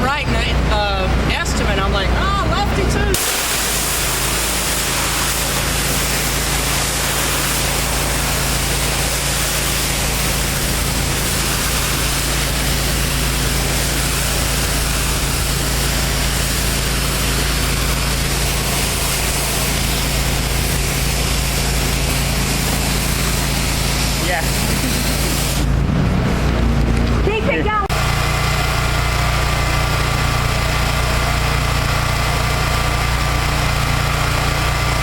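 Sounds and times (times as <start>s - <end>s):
pressure washer engine humming: 0.0s - 35.0s
high-pressure water spray hissing: 3.1s - 25.8s, 27.9s - 35.0s.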